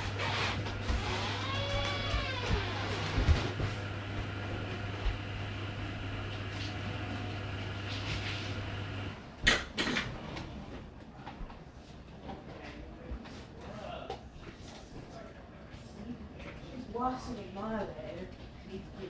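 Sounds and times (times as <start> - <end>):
dishwasher pump humming: 0.0 - 9.2.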